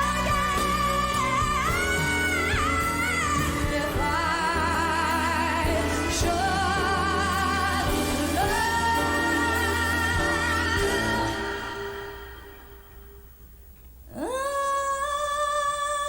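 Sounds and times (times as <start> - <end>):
live band accompaniment: 0.0 - 12.7
woman singing pop ballad: 0.0 - 12.8, 14.1 - 16.0.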